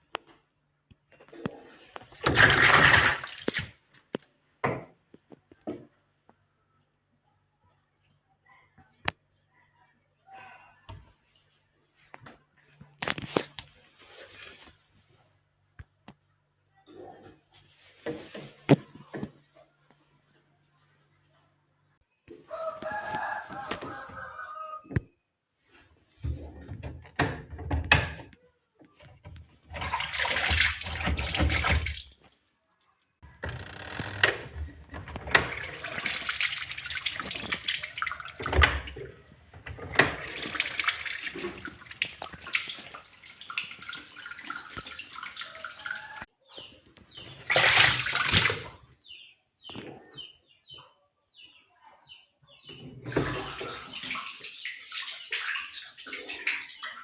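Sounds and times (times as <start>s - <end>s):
washing machine water gushing: 29.7s - 32.0s, 33.7s - 46.2s.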